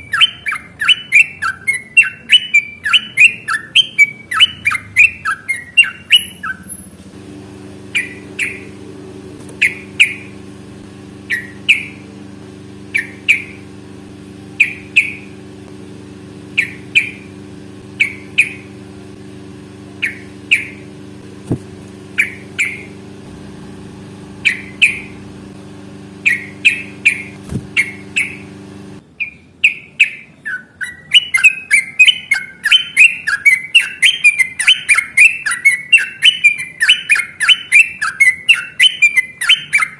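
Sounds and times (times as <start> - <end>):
bird singing chirped notes: 0.0 - 6.8, 7.9 - 8.8, 9.6 - 10.4, 11.2 - 12.1, 12.9 - 13.7, 14.6 - 15.4, 16.4 - 18.8, 20.0 - 20.9, 22.2 - 23.0, 24.4 - 25.2, 26.2 - 28.4, 29.2 - 39.9
steady low hum: 6.8 - 29.2.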